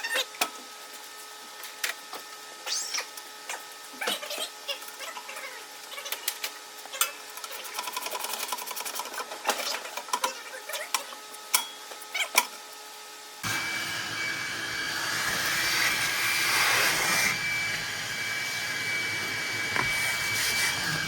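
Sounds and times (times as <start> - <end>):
hand tools and metal clattering: 6.1 - 12.7.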